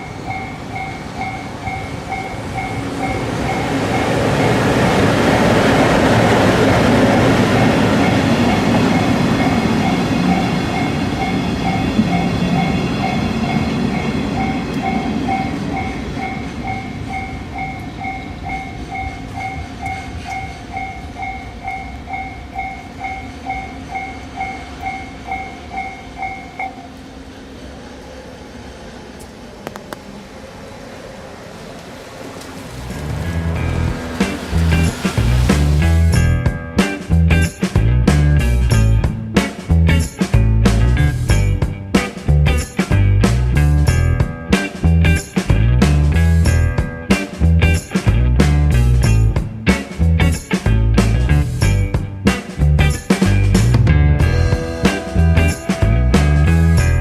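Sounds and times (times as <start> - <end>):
freight train rumbling past: 0.0 - 57.0
level crossing bell ringing: 54.3 - 57.0.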